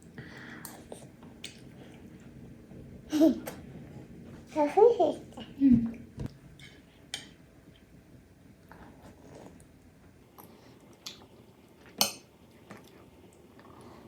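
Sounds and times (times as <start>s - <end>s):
cutlery clinking against a dish: 12.0s - 12.3s.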